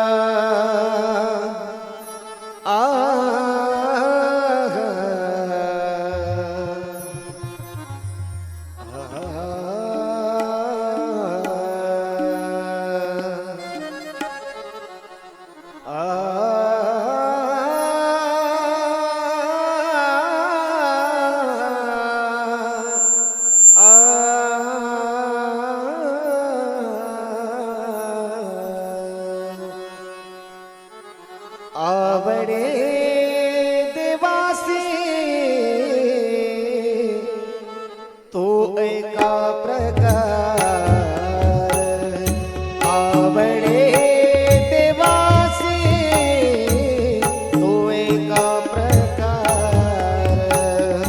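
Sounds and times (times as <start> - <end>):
person singing wordless devotional song: 0.0 - 23.0, 31.6 - 51.0
harmonium drone: 1.0 - 18.1, 22.6 - 25.6, 28.1 - 33.3, 37.2 - 38.3, 39.4 - 51.0
man singing a held note: 39.2 - 51.0
drum strokes: 40.0 - 51.0.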